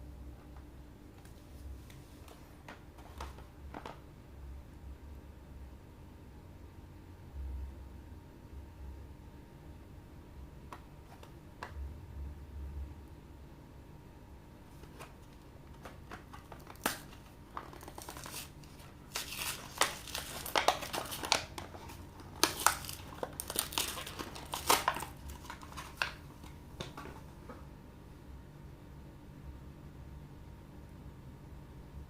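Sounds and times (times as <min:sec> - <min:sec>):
plastic wrapper crinkling and tearing: 0:14.8 - 0:27.2.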